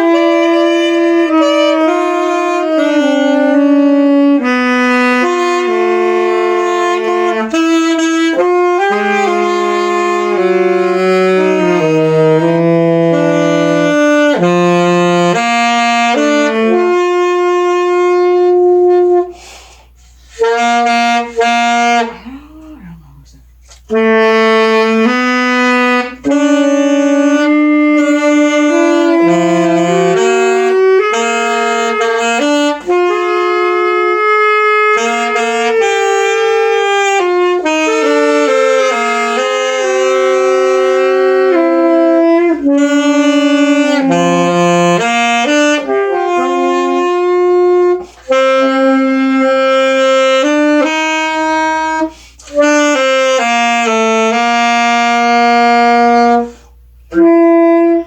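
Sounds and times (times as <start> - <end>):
saxophone slow melody: 0.0 - 58.0.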